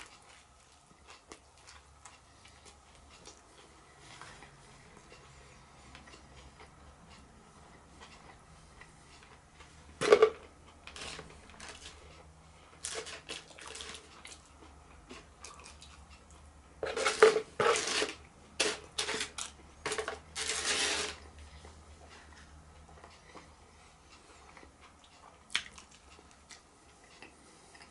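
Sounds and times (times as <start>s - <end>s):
crunching fried food: 12.8s - 16.1s.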